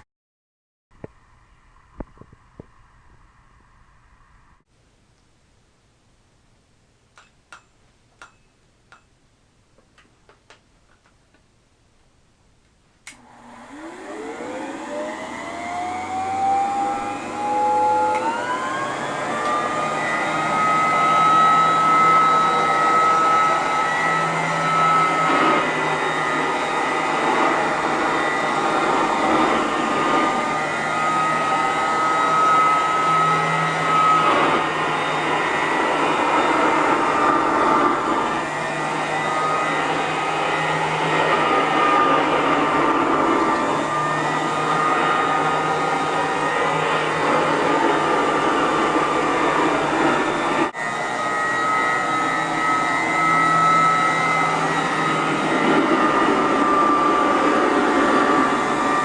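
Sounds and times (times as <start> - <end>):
vacuum cleaner motor whine: 13.1 - 59.0.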